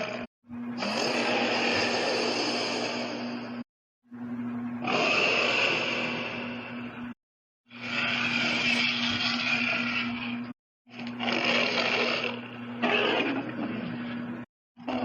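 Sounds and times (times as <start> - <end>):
steady low hum: 0.0 - 15.0
breathy hissing creature roars: 0.8 - 3.6, 4.8 - 6.7.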